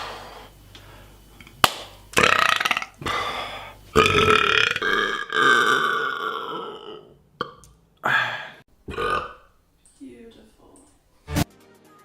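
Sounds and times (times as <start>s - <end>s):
person belching: 2.2s - 9.5s.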